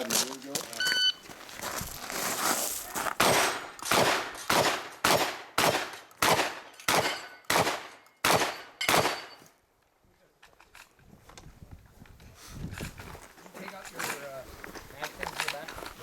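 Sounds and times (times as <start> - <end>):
shotgun shots: 3.2 - 9.4.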